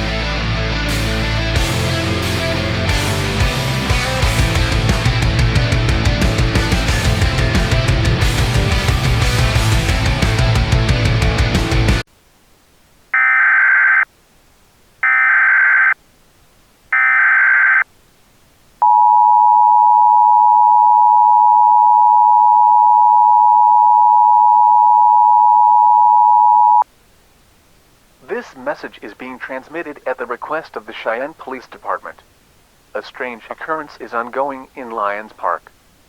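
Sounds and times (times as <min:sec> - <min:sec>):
heavy rock music: 0:00.0 - 0:12.1.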